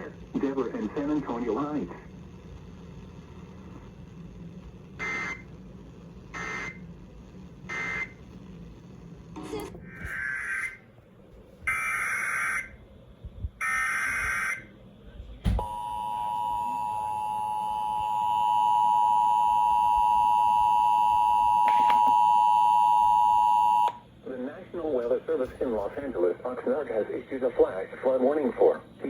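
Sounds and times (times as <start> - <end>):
steady high alarm beep: 5.0 - 5.4, 6.4 - 6.8, 7.7 - 8.2, 11.7 - 12.7, 13.6 - 14.7, 15.6 - 24.0
buzzy digital data tones: 5.0 - 5.5, 6.3 - 6.9, 7.7 - 8.2.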